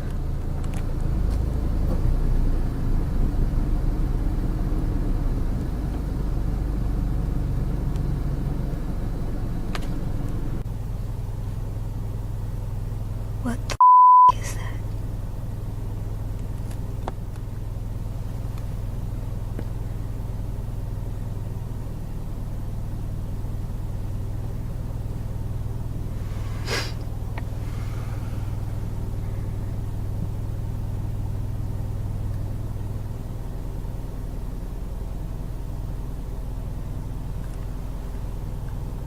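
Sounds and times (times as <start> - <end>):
car engine idling: 0.0 - 13.7, 14.5 - 39.0.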